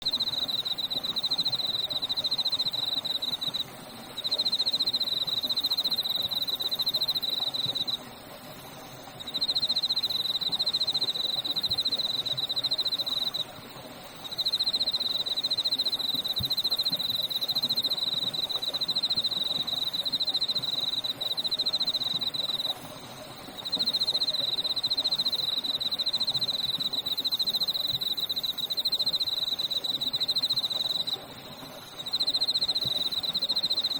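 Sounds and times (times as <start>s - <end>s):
insect trilling: 0.1s - 8.1s, 14.2s - 22.9s, 23.5s - 33.9s
stream murmuring: 0.1s - 33.9s.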